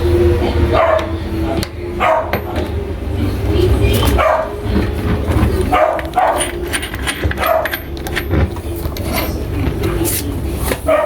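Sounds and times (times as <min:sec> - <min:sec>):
dog barking: 0:00.7 - 0:02.6, 0:04.0 - 0:06.7, 0:07.3 - 0:07.9.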